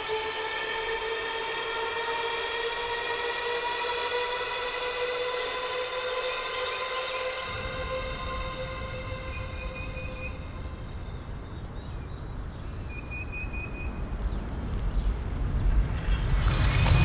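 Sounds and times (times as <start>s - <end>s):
sustained horn-like tone: 0.0s - 11.1s.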